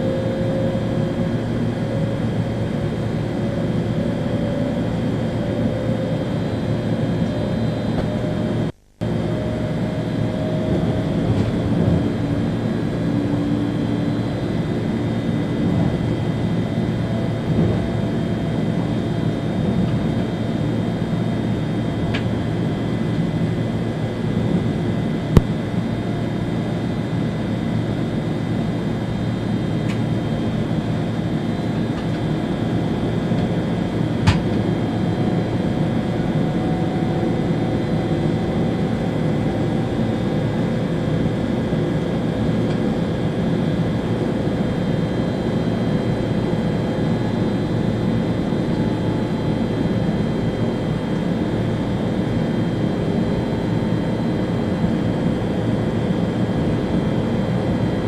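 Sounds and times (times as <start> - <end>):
train rumble and rush: 9.9 - 13.9, 15.6 - 20.2.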